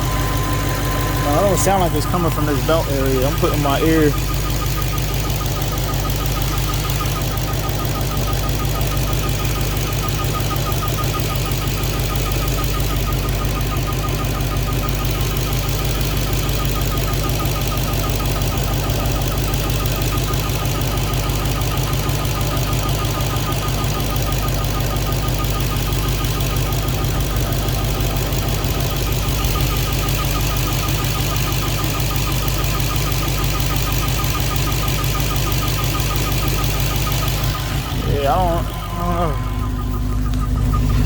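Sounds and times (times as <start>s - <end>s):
high repeating chirp: 0.0s - 4.2s
car engine idling: 0.0s - 41.0s.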